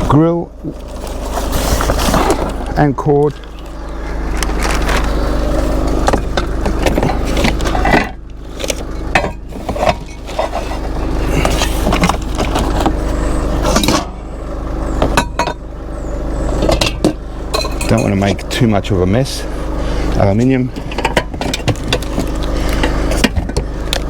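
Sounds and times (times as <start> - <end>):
low engine hum: 0.0 - 24.0
scrap metal and plastic clattering: 0.6 - 3.4, 4.4 - 14.2, 20.1 - 24.0.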